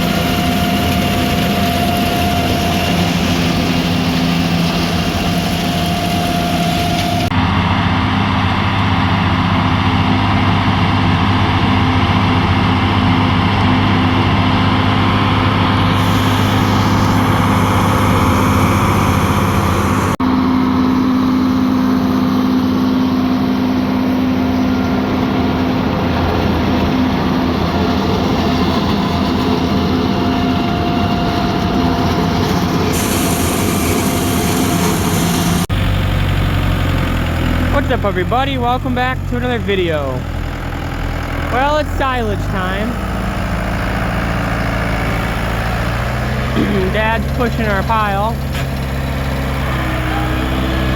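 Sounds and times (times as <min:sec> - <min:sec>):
tractor engine running under load: 0:00.0 - 0:50.9.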